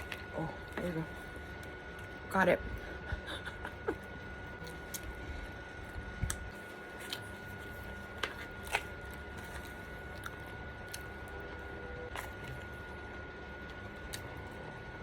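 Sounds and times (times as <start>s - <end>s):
chewing crispy food: 3.7s - 15.0s.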